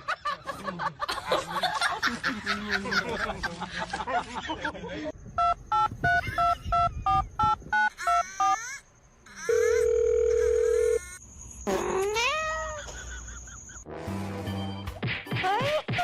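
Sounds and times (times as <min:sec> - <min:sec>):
steady phone tone: 0:09.5 - 0:11.0
cat meowing: 0:12.0 - 0:12.8.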